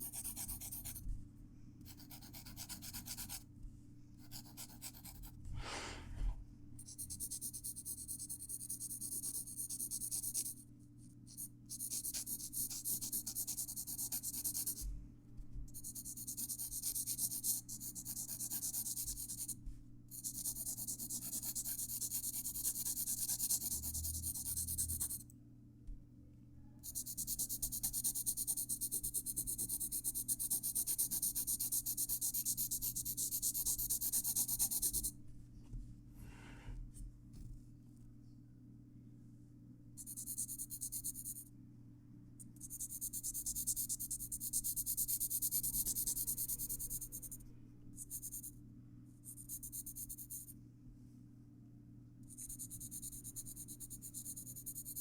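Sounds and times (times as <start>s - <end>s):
pencil scribbling on paper: 0.0s - 1.0s, 1.8s - 3.4s, 4.2s - 5.3s, 6.8s - 10.6s, 11.3s - 14.9s, 15.7s - 25.2s, 26.8s - 35.1s, 40.0s - 41.4s, 42.6s - 47.4s, 48.0s - 48.5s, 49.2s - 50.5s, 52.3s - 55.0s.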